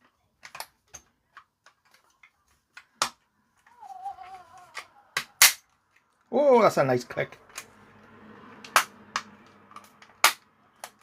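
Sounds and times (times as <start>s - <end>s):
plastic toy parts clicking: 0.3s - 3.8s, 8.6s - 11.0s.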